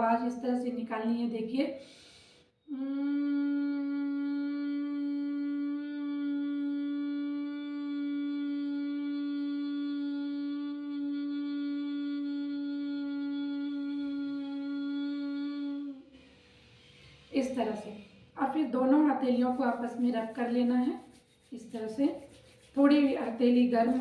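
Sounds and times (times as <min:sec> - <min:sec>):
woman humming one long note: 0:02.7 - 0:16.1.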